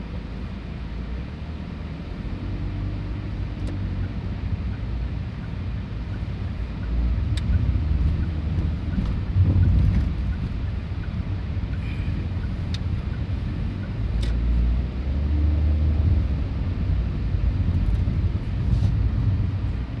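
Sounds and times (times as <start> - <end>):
vehicle rumble: 0.0 - 20.0.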